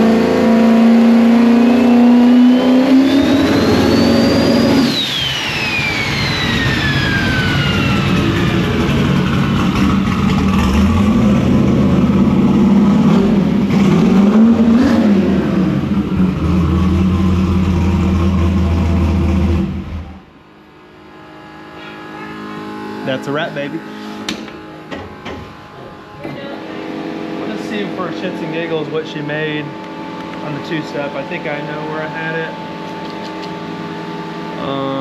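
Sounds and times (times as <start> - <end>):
car engine revving: 0.0 - 35.0
turbo whistle: 2.6 - 8.1.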